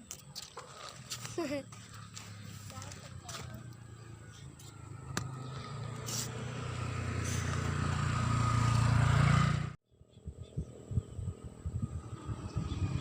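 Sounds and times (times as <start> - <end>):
vehicle engine running: 1.1 - 9.8.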